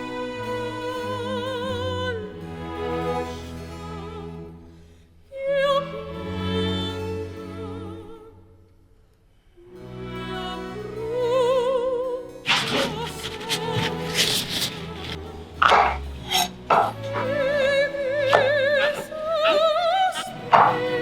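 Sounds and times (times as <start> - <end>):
operatic singing with classical music: 0.0 - 8.6, 9.6 - 21.0.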